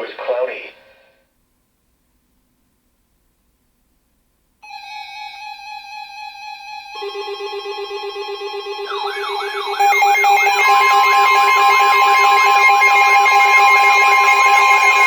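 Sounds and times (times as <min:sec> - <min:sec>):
rising and falling siren wail: 0:07.0 - 0:15.0
steady beep-like tone: 0:07.0 - 0:15.0
low pulsing tone: 0:07.6 - 0:14.5.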